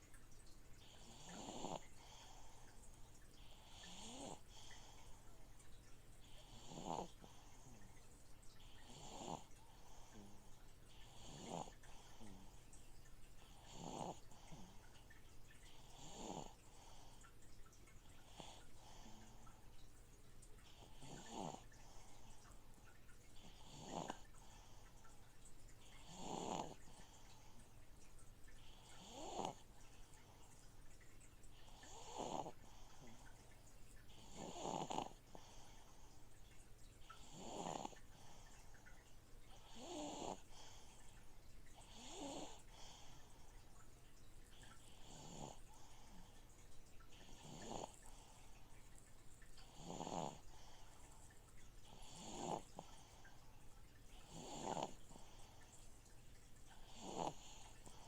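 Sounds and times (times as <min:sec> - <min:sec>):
aquarium filter hum: 0:00.0 - 0:58.0
person snoring: 0:06.3 - 0:07.8, 0:11.0 - 0:12.5, 0:26.0 - 0:26.8, 0:47.2 - 0:48.2, 0:49.7 - 0:50.6, 0:54.2 - 0:55.3, 0:56.9 - 0:58.0.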